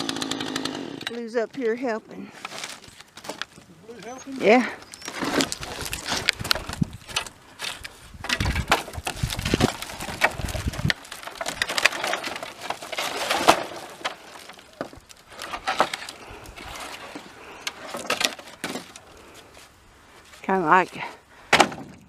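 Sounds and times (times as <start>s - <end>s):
wood pieces clattering: 2.4s - 19.1s.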